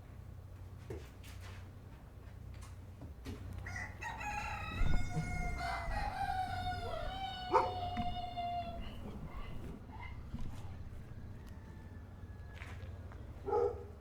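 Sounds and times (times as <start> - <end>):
rooster crowing: 3.6 - 9.7, 11.0 - 12.8.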